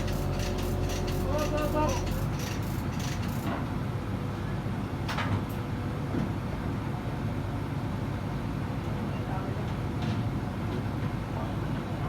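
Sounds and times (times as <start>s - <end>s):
crane engine rumbling: 0.0s - 3.4s.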